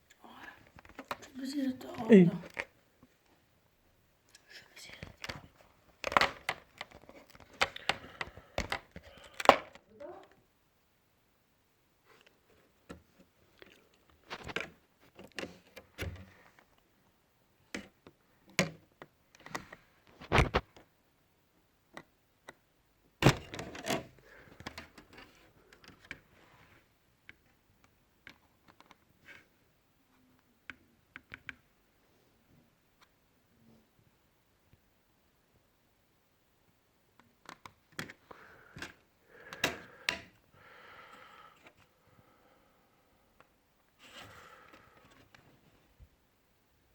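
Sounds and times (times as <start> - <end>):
laptop parts clicking and knocking: 5.0 - 9.8, 30.6 - 31.7, 37.2 - 40.4
plastic laptop parts clicking and snapping: 5.0 - 9.8, 13.6 - 16.2, 23.2 - 26.2, 28.2 - 29.0, 37.4 - 38.2, 38.8 - 40.4.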